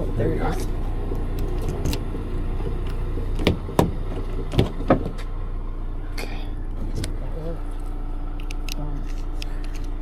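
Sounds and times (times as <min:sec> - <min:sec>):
low vehicle engine hum: 0:00.0 - 0:10.0
car door and lock clicks: 0:01.2 - 0:05.2.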